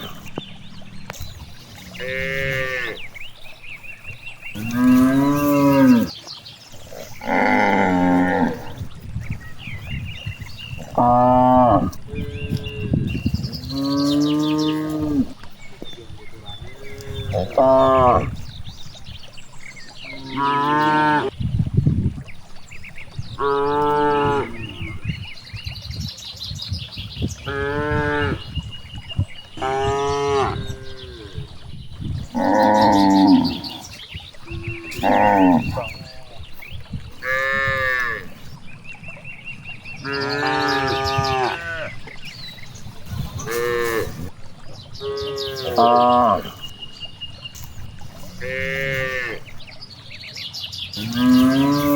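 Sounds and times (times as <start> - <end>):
cattle mooing: 1.8 - 3.1, 7.0 - 8.7, 16.7 - 18.3, 40.0 - 42.0, 43.4 - 44.3, 51.0 - 51.9.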